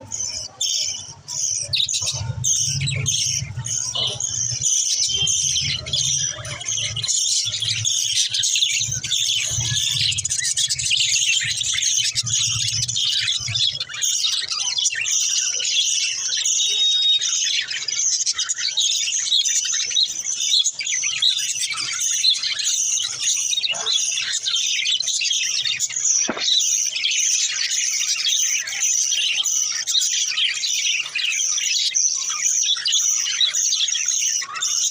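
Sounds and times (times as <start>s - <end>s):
budgerigars chirping: 0.0s - 34.9s.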